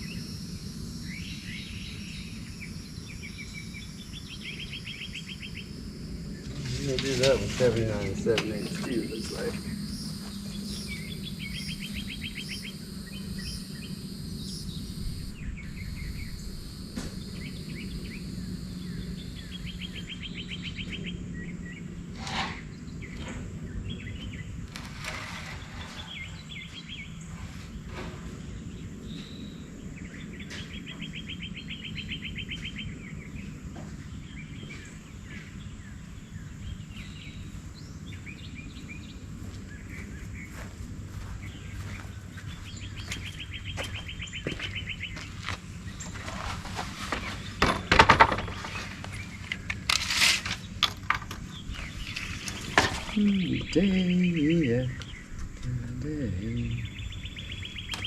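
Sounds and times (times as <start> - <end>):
bird trills and chirps: 0.0 - 7.1, 8.0 - 21.8, 39.9 - 58.0
high steady whine: 0.0 - 58.0.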